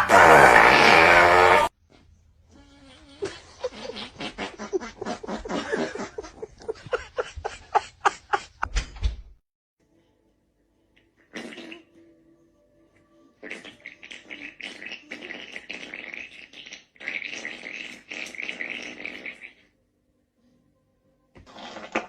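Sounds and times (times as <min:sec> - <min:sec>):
person laughing: 0:03.2 - 0:08.7.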